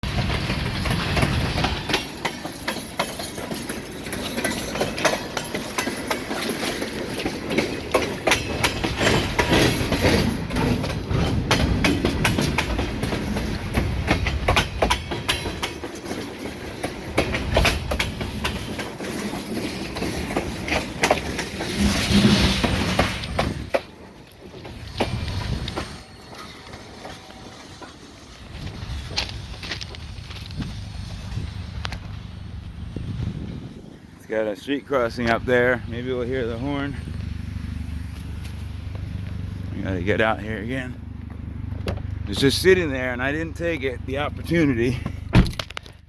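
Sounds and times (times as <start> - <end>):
train wheels clacking over rail joints: 0.0 - 32.3
train rumble: 0.0 - 46.0.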